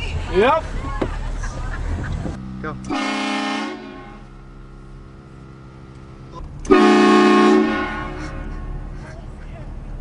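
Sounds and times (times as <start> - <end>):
train horn blasting: 2.9 - 4.3, 6.7 - 8.8.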